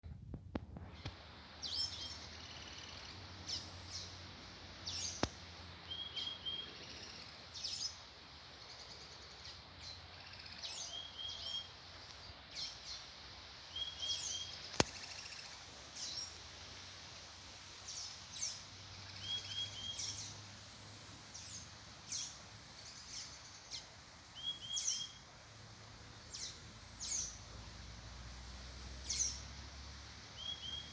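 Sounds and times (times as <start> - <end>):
background hiss: 0.1 - 30.9
birds calling: 0.8 - 13.1, 17.8 - 20.5, 21.3 - 25.3, 26.2 - 27.5, 29.0 - 29.6.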